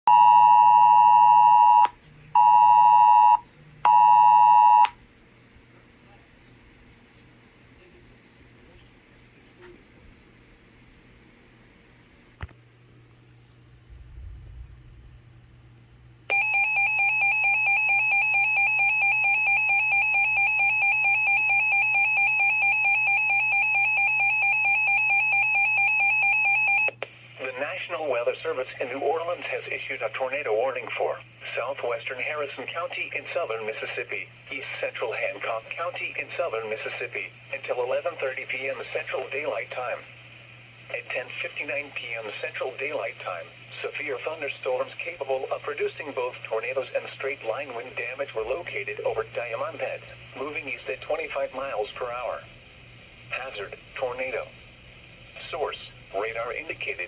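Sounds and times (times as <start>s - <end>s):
harsh two-tone alert alarm: 0.1s - 4.9s, 16.3s - 27.0s.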